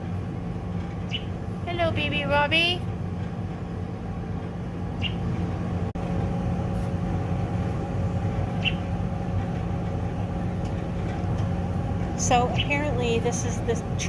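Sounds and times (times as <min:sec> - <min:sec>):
steady low hum: 0:00.0 - 0:14.0
fledgling bird chirps: 0:01.0 - 0:01.4, 0:05.0 - 0:05.3, 0:08.6 - 0:08.9.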